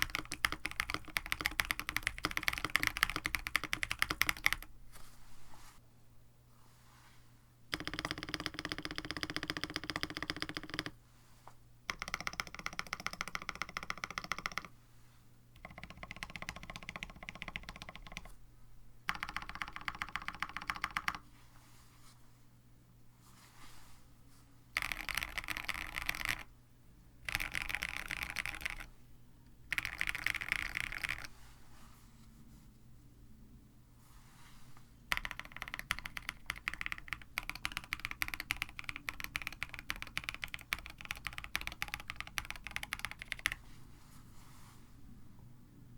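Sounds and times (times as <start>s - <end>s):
mechanical keyboard typing: 0.0s - 4.7s, 7.7s - 11.0s, 11.9s - 14.7s, 15.6s - 18.4s, 19.1s - 21.2s, 24.8s - 26.5s, 27.2s - 28.9s, 29.7s - 31.3s, 35.1s - 43.6s.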